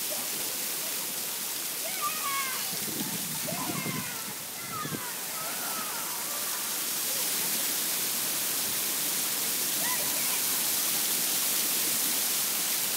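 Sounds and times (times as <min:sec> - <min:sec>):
faint voices: 0:00.0 - 0:07.8
fountain water splashing: 0:00.0 - 0:12.9.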